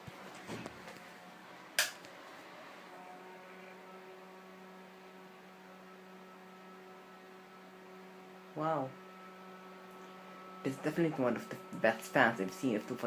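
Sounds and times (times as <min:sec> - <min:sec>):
low electrical hum: 0:00.0 - 0:13.0
sharp click: 0:01.8 - 0:02.1.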